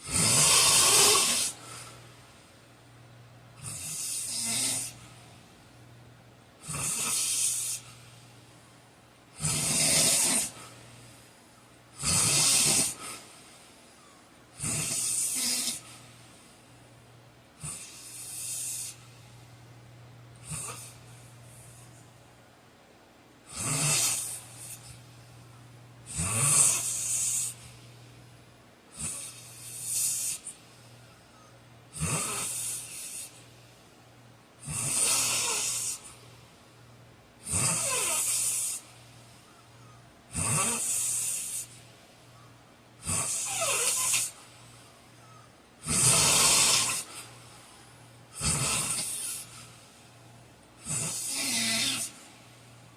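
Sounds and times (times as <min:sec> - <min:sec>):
man snoring loudly: 0:00.0 - 0:01.6, 0:03.6 - 0:05.0, 0:06.6 - 0:07.8, 0:09.4 - 0:10.6, 0:12.0 - 0:13.2, 0:14.6 - 0:15.8, 0:17.6 - 0:19.0, 0:20.4 - 0:20.9, 0:23.5 - 0:24.9, 0:26.1 - 0:27.6, 0:28.9 - 0:30.5, 0:31.9 - 0:33.4, 0:34.6 - 0:36.1, 0:37.4 - 0:38.8, 0:40.3 - 0:41.7, 0:43.0 - 0:44.3, 0:45.8 - 0:47.2, 0:48.4 - 0:49.5, 0:50.8 - 0:52.2.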